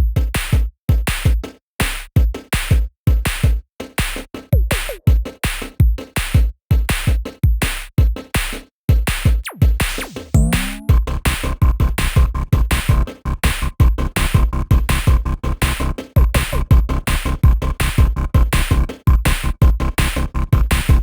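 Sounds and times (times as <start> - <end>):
drum-machine beat: 0.0 - 21.0
electronic music: 9.4 - 21.0.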